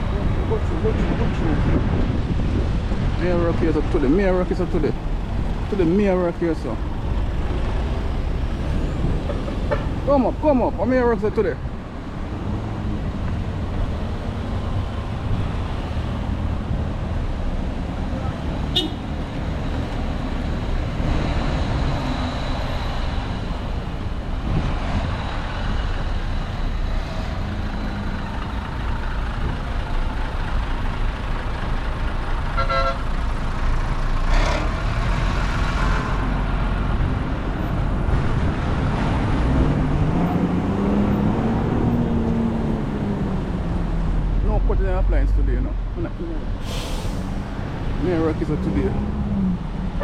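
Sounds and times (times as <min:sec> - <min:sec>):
road traffic rumble: 0:00.0 - 0:50.0
vehicle passing by: 0:33.3 - 0:46.6, 0:47.2 - 0:50.0.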